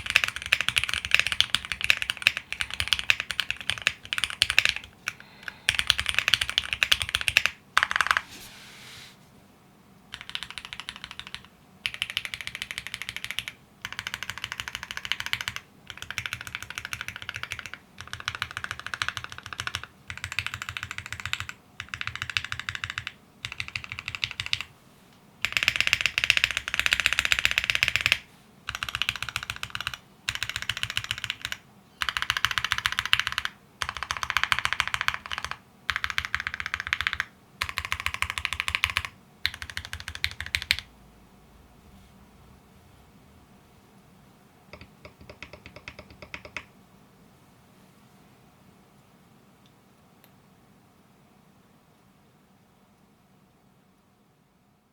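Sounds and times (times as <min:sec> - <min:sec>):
mechanical keyboard typing: 0:00.0 - 0:08.3, 0:10.1 - 0:24.7, 0:25.4 - 0:40.9, 0:44.7 - 0:46.7.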